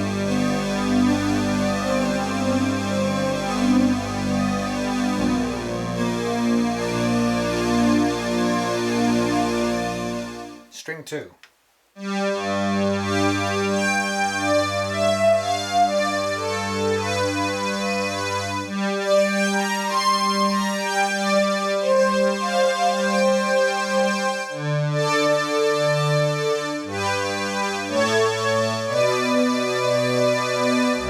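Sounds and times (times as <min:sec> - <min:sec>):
synthesizer string chords: 0:00.0 - 0:10.7.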